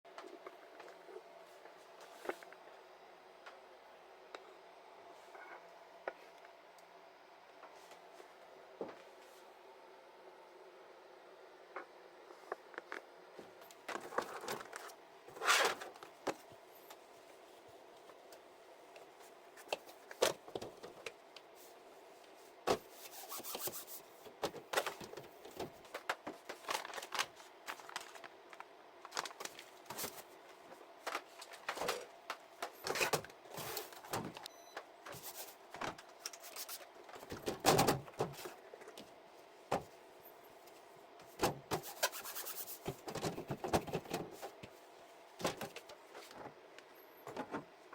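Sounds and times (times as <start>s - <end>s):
faint steady hum: 0.1s - 47.9s
containers and shelves handled: 11.8s - 17.1s, 22.5s - 40.0s, 40.6s - 47.9s.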